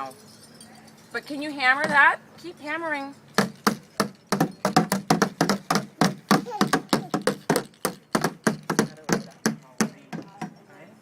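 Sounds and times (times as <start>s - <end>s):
hammer tapping: 3.4s - 10.6s.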